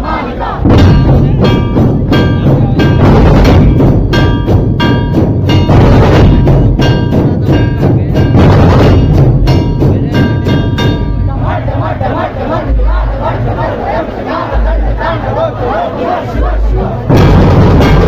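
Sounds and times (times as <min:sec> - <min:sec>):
heavy drum beat: 0:00.0 - 0:18.0
ringing bell-like notes: 0:09.0 - 0:12.0.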